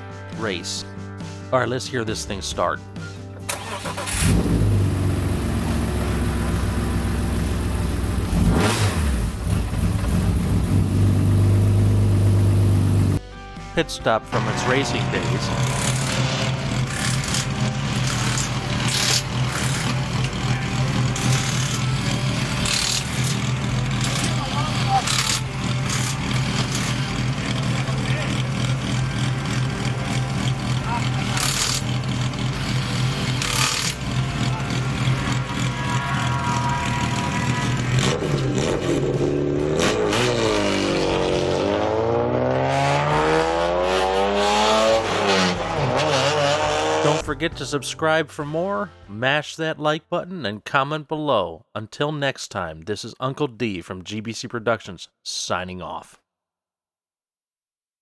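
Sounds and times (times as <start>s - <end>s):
race car engine idling: 4.2s - 8.5s, 9.2s - 13.2s, 15.3s - 39.4s.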